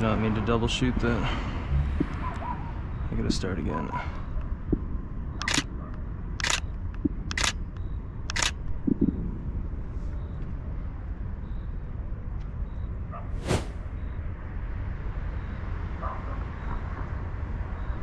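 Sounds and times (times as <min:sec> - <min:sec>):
camera shutter firing: 0:05.4 - 0:05.7, 0:06.4 - 0:06.6, 0:07.3 - 0:07.6, 0:08.3 - 0:08.6.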